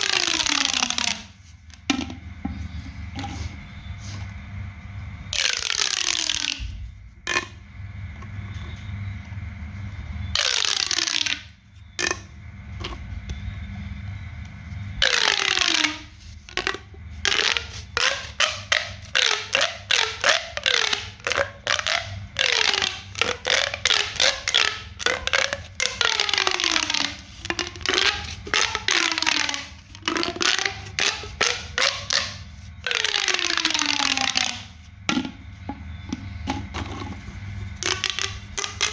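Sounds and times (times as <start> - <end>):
pop toy popping: 0.0 - 1.3, 5.4 - 7.6, 10.4 - 12.3, 15.0 - 35.3, 37.8 - 38.9.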